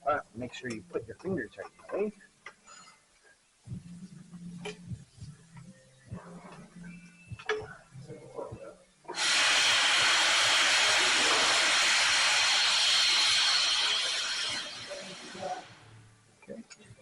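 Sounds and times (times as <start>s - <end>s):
compressed air tool hissing: 9.1s - 15.7s.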